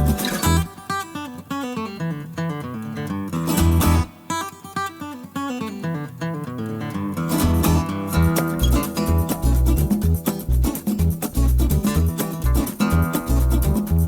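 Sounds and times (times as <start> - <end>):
bass line: 0.0 - 0.7, 7.6 - 14.0
acoustic guitar music: 0.0 - 14.0.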